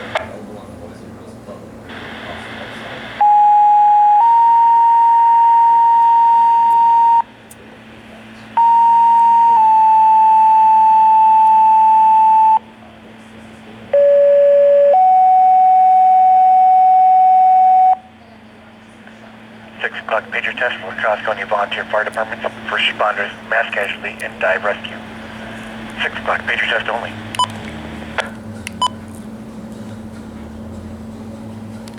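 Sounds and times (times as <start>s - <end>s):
radio hiss: 0.0s - 0.4s, 1.9s - 3.2s, 19.1s - 28.3s.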